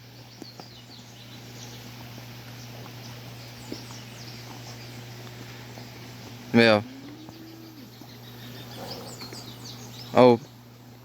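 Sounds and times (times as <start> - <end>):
steady low hum: 0.0 - 11.0
faint bird chirps: 6.6 - 10.6.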